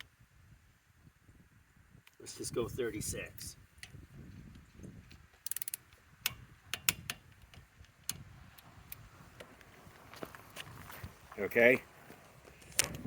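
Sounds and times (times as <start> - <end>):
wrench and socket clicking: 5.4 - 7.2.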